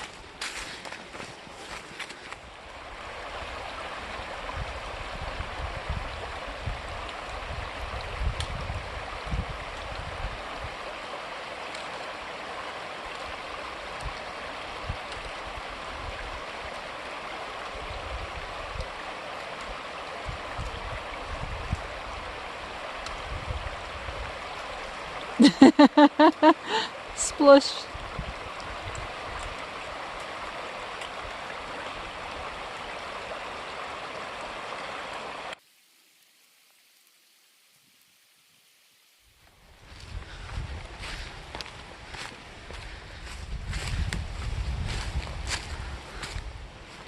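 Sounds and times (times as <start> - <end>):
creek flowing over rocks: 0.0 - 47.0.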